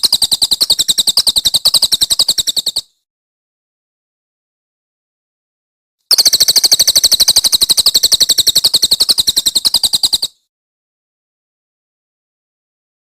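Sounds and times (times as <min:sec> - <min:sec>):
songbird rattling trill: 0:00.0 - 0:03.0, 0:06.1 - 0:10.4.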